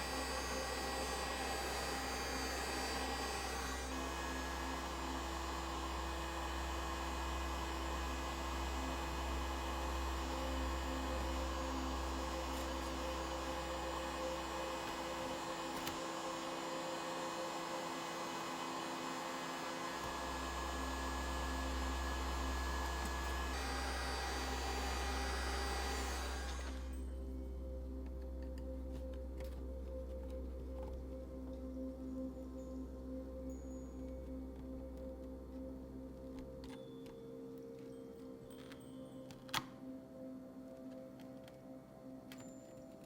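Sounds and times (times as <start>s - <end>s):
heat gun blowing: 0.0s - 11.0s, 12.0s - 27.0s.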